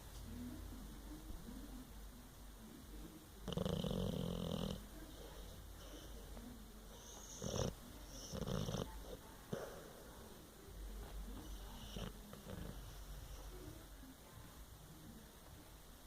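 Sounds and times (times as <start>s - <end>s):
dog snoring: 3.4s - 6.2s, 6.9s - 9.8s, 11.4s - 13.6s.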